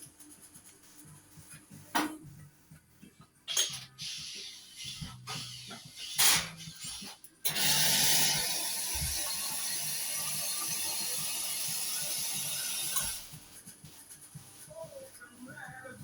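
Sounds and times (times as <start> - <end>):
steam wand hissing: 4.0 - 6.8.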